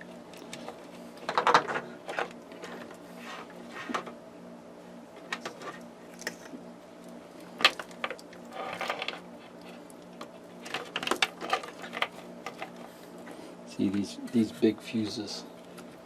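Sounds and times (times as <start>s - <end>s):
wiring clicks and rattles: 7.6s - 12.8s.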